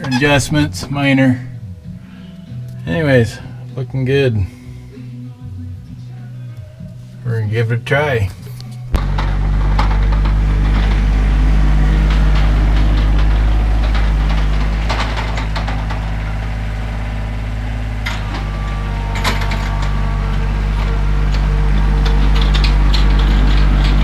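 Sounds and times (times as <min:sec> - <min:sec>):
tractor diesel engine running: 0:08.8 - 0:24.0
sharp clanks: 0:09.0 - 0:24.0.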